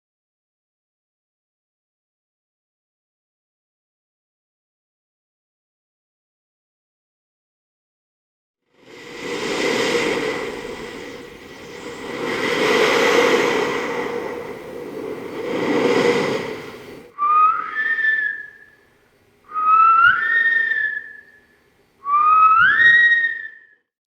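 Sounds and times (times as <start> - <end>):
rushing noise: 8.8 - 17.2
rising whistles: 8.8 - 18.9, 19.5 - 23.9.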